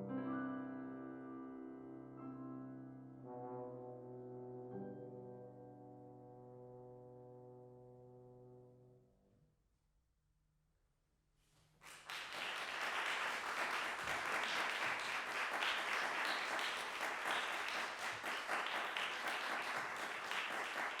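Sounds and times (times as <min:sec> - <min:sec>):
audience applause: 0:11.8 - 0:21.0.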